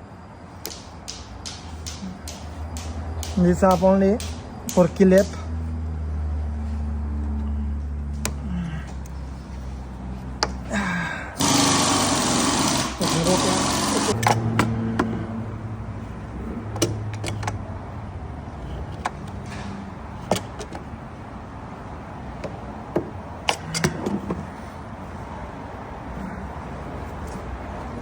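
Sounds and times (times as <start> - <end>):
steady background noise: 0.0 - 28.0
car parts clicking and knocking: 0.6 - 5.6, 8.2 - 9.2, 10.3 - 10.7, 11.4 - 15.4, 16.0 - 17.8, 18.4 - 21.2, 22.2 - 24.7.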